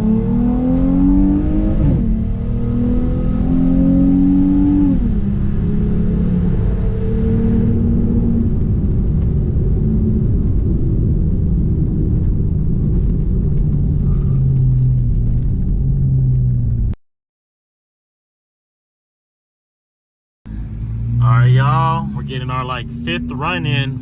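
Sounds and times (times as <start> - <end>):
car engine running: 20.5 - 24.0.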